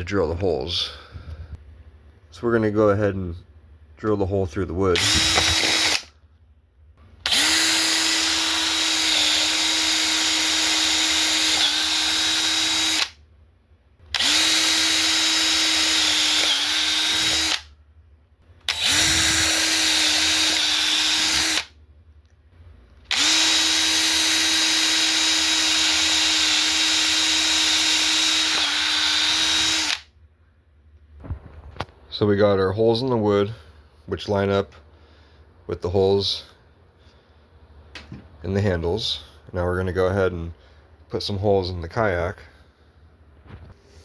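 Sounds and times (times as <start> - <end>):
electric drill boring into wood: 5.0 - 6.1, 7.2 - 13.2, 14.1 - 17.7, 18.6 - 21.7, 23.1 - 30.1.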